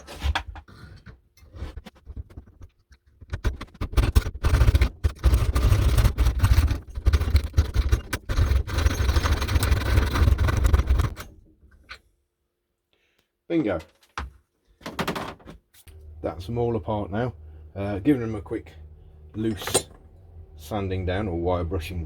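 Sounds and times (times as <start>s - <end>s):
hacksaw cutting metal: 3.6s - 11.2s, 19.4s - 20.0s.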